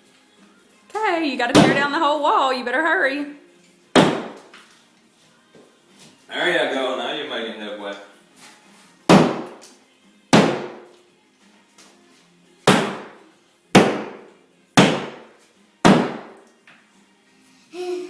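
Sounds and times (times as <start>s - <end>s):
hammer striking drywall: 4.0s - 4.5s, 9.1s - 9.6s, 10.3s - 10.9s, 12.7s - 13.2s, 13.8s - 16.3s.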